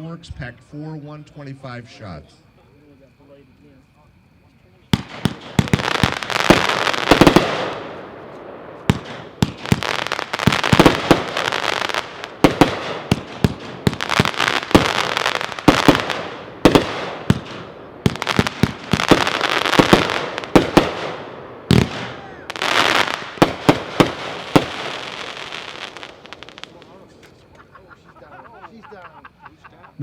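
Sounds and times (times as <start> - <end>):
fireworks sharp reports: 0.0 - 27.5
fireworks crackling: 4.8 - 28.1.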